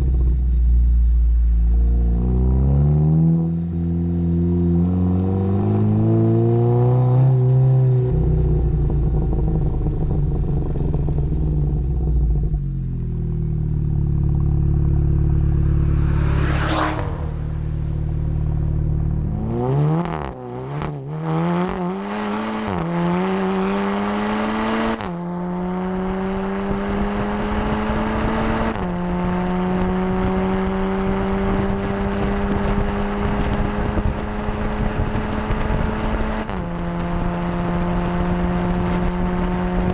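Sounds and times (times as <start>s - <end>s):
car engine revving hard: 14.4s - 39.9s.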